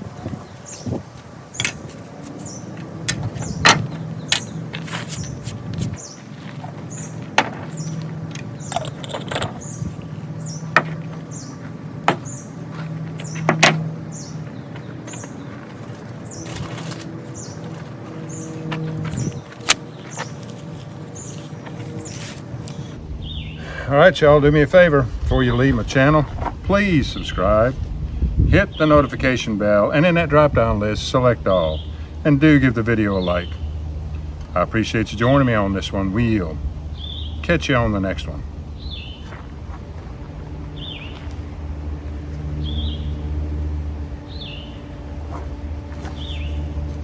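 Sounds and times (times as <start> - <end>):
bird chirping: 0.0 - 23.4
burning paper crackling: 4.1 - 8.2, 14.4 - 23.0.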